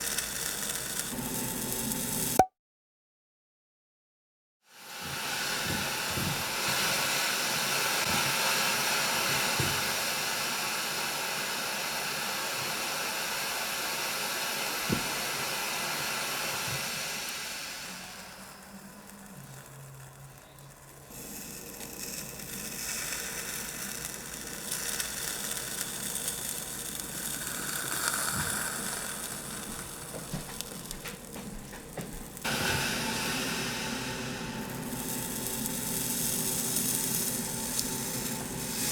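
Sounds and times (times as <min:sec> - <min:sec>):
hot knife hissing and sizzling: 0:00.0 - 0:02.4, 0:04.7 - 0:38.9
small crackles: 0:00.0 - 0:02.4, 0:18.4 - 0:32.5.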